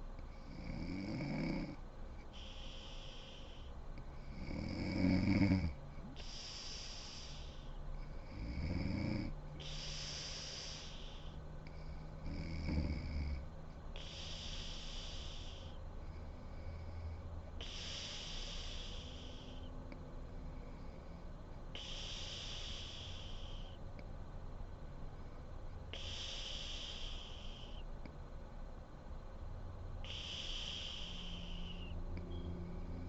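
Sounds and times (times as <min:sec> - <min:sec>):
breathy hiss of air: 0:00.0 - 0:28.1, 0:29.3 - 0:33.0
woman snoring: 0:00.4 - 0:01.8, 0:04.3 - 0:07.6, 0:08.2 - 0:11.3, 0:12.2 - 0:13.4, 0:14.0 - 0:15.7, 0:16.4 - 0:19.5, 0:21.8 - 0:23.6, 0:30.1 - 0:31.8.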